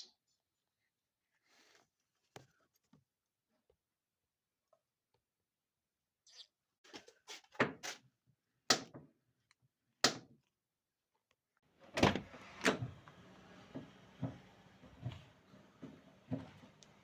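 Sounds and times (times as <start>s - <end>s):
car door shutting: 11.9s - 17.0s.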